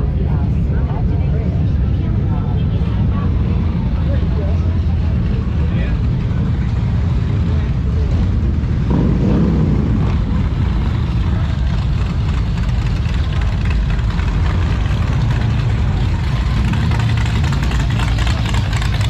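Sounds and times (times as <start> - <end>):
motorcycle engines idling: 0.0 - 19.0
motorcycle engine revving: 6.8 - 19.0.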